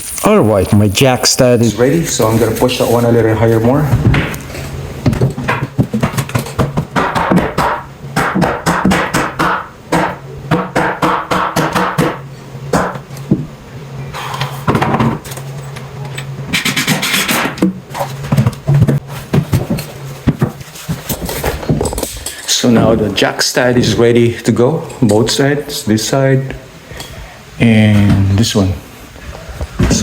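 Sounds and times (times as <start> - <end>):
hammer knocking wooden stud: 6.0 - 12.2.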